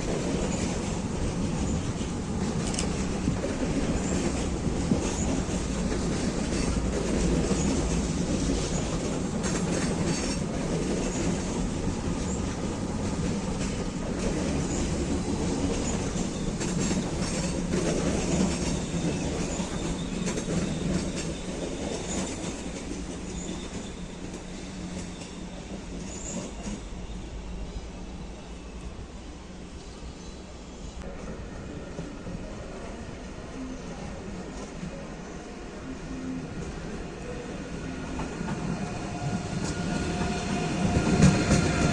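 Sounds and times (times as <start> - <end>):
train wheels clicking over rails: 0.0 - 27.0, 37.8 - 41.9.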